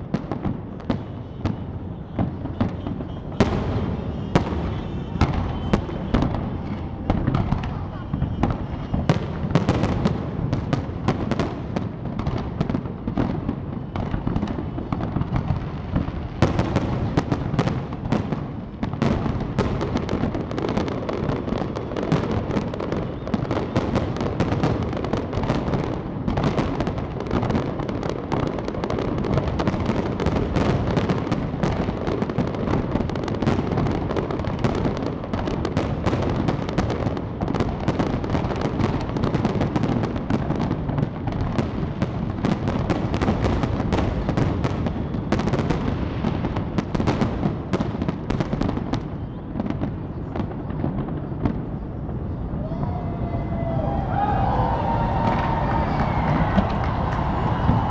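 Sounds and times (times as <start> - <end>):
firework bangs and crackles: 0.0 - 57.9
rumble of explosions: 0.1 - 11.6.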